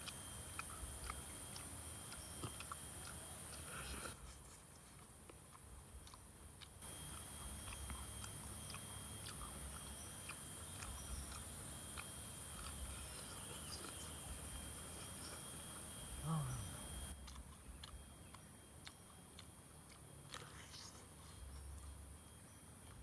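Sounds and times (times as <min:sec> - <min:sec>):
crisp mouth clicks: 0:00.0 - 0:04.2, 0:16.8 - 0:21.1
person chewing food: 0:00.0 - 0:04.2, 0:04.8 - 0:22.0
steady high hiss: 0:00.0 - 0:04.2, 0:06.8 - 0:17.2.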